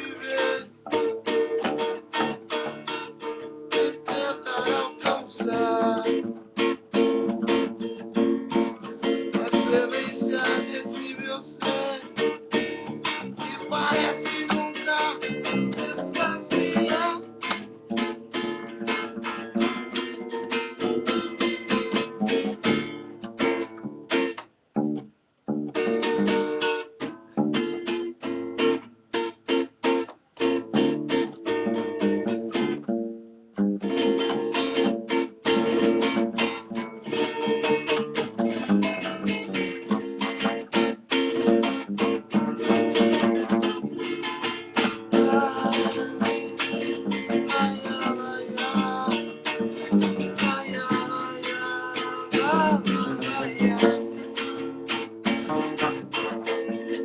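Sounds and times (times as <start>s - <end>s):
acoustic guitar strumming samba: 0.0s - 57.0s.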